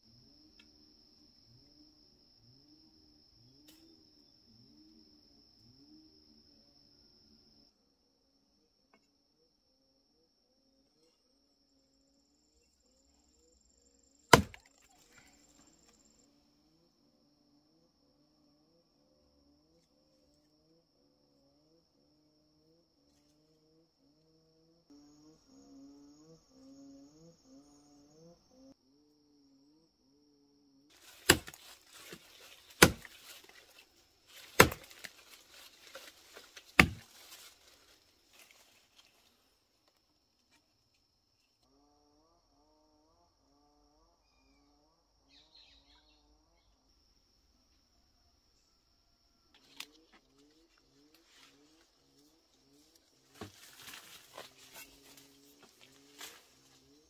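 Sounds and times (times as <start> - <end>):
blade chopping wood: 14.3 - 14.7, 31.0 - 33.6, 34.3 - 37.5
rustling and small knocks: 31.0 - 39.3, 52.8 - 56.8.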